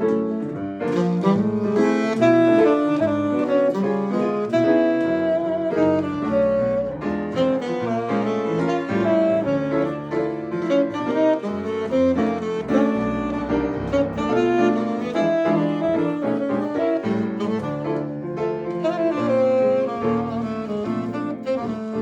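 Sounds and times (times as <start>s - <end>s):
live jazz band: 0.0s - 22.0s.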